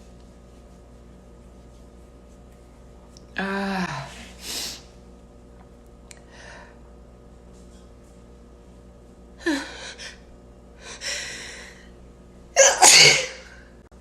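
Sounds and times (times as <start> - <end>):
person sneezing: 12.6 - 13.6.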